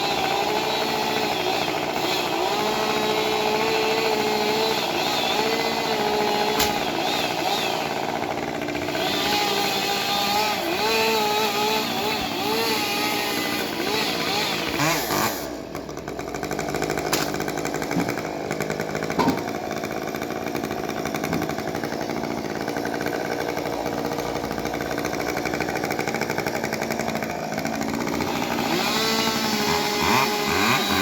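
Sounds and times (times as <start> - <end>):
chainsaw engine running: 0.0 - 31.0
sharp knocks: 6.5 - 6.9.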